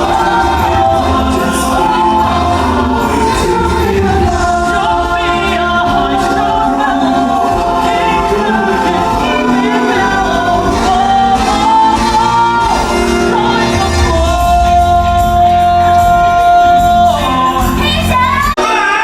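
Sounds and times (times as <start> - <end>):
instrumental accompaniment: 0.0 - 19.0
singing: 0.0 - 19.0.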